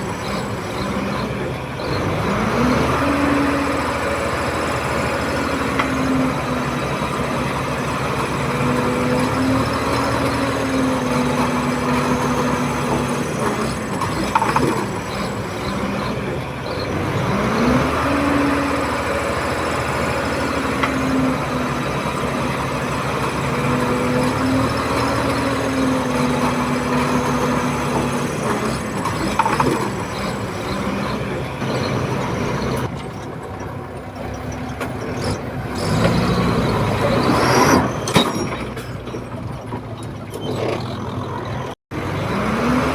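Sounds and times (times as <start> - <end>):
bulldozer diesel engine under load: 0.0 - 42.9.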